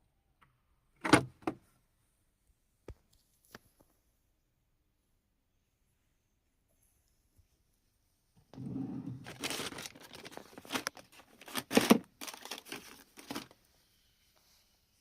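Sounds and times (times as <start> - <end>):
rustling and crinkling handling noise: 8.4 - 15.0.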